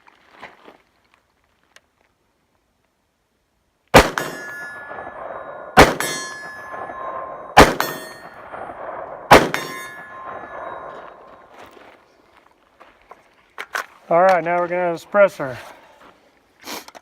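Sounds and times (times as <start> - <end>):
gunshots with metallic ring: 4.0 - 11.5.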